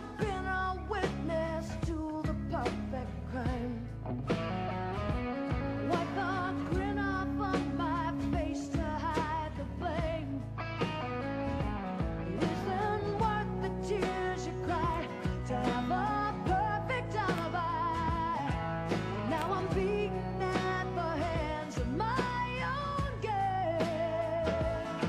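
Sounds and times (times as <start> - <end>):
woman singing: 0.0 - 4.1, 5.8 - 10.6, 12.2 - 25.0
bass guitar: 0.0 - 25.0
drums: 0.0 - 25.0
electric guitar: 0.0 - 25.0.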